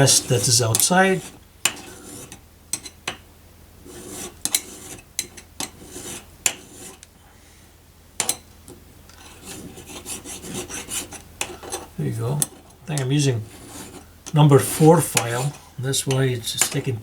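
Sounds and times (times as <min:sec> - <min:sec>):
metal file rasping on ring: 0:01.2 - 0:02.9, 0:03.9 - 0:07.0, 0:09.2 - 0:16.2.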